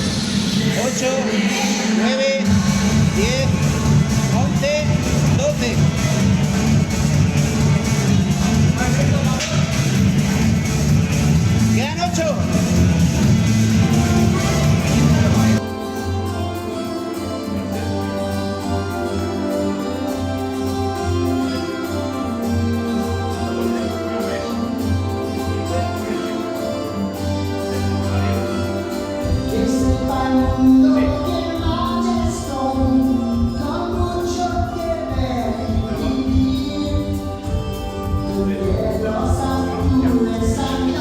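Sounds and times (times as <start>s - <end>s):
song with singing over bass: 0.0s - 16.8s, 29.2s - 41.0s.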